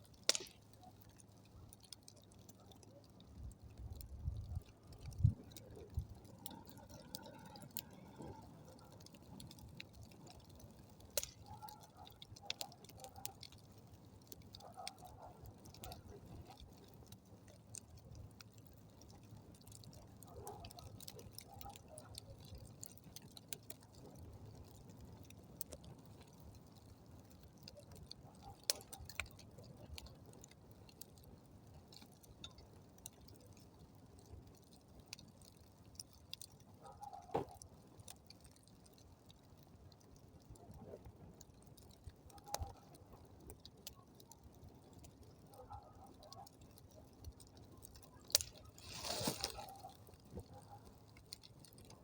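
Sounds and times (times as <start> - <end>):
campfire crackling and popping: 0.0 - 52.0.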